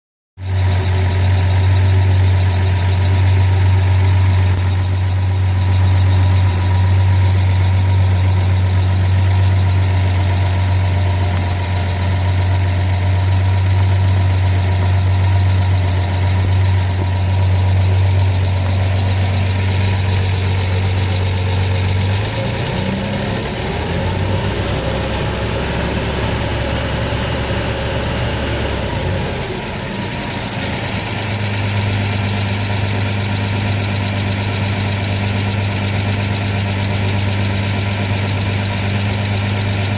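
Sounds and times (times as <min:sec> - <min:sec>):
engine running: 0:00.4 - 0:39.9.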